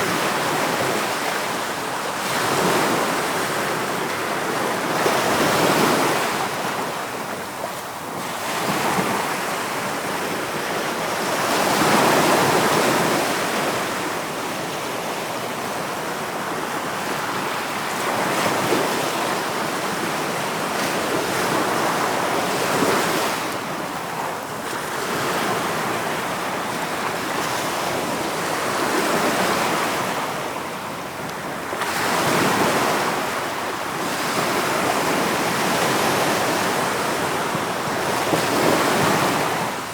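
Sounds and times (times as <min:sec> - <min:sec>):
ocean waves breaking: 0:08.1 - 0:39.9.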